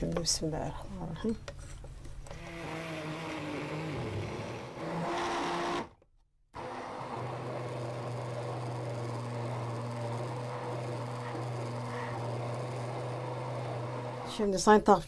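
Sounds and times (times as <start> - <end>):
electric blender running: 2.3 - 6.0, 6.6 - 14.5.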